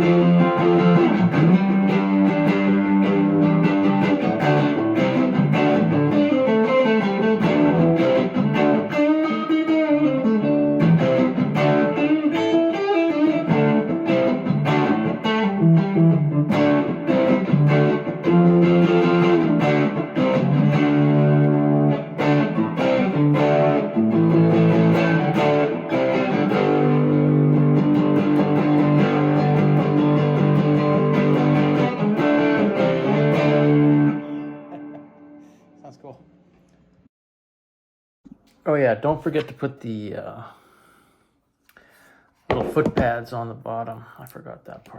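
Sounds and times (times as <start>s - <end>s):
overdriven electric guitar: 0.0s - 35.7s.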